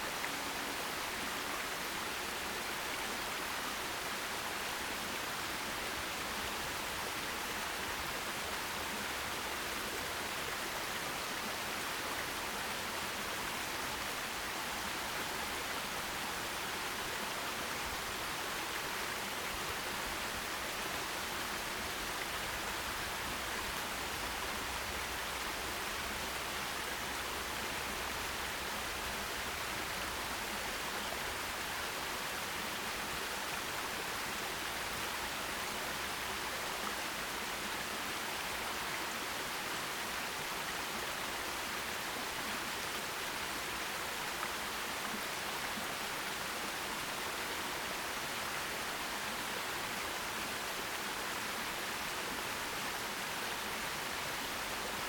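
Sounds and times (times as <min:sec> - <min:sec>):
stream water rushing: 0:00.0 - 0:55.0.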